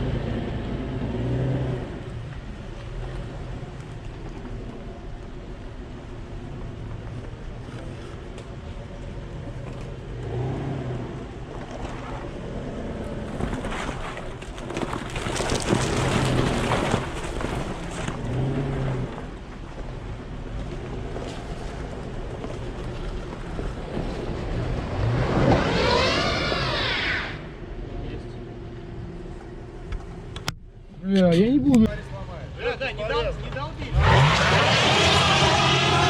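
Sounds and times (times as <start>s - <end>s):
vehicle engine revving: 10.1s - 13.6s, 23.6s - 27.5s, 33.8s - 36.0s
rushing noise: 24.2s - 27.7s, 33.9s - 36.0s.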